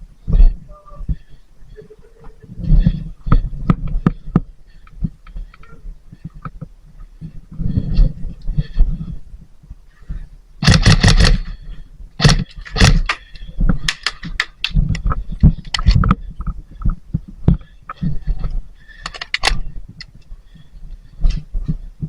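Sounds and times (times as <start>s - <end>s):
sharp clicks and knocks: 10.6s - 11.5s, 12.2s - 20.2s.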